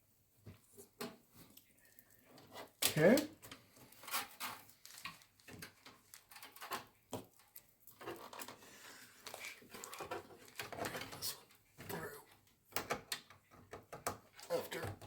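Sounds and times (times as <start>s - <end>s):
computer parts clicking and knocking: 12.7s - 15.0s.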